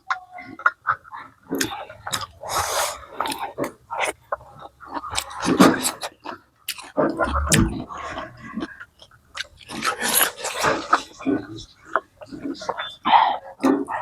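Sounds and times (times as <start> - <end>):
chewing with wet smacks: 0.1 - 2.5, 3.1 - 7.7.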